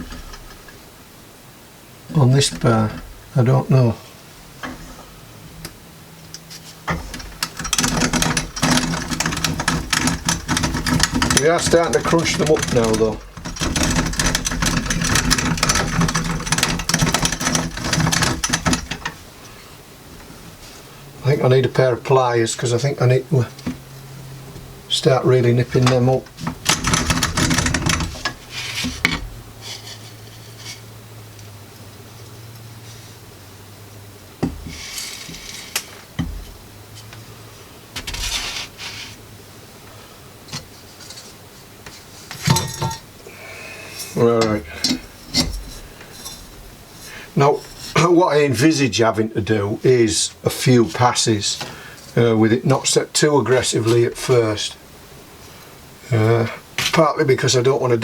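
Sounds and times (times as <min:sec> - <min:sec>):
low mechanical hum: 0:00.0 - 0:58.0
rustling: 0:06.3 - 0:21.0, 0:25.6 - 0:31.0, 0:34.6 - 0:48.1
metal tools clinking and rattling: 0:06.9 - 0:19.2, 0:25.8 - 0:29.2, 0:42.3 - 0:43.1.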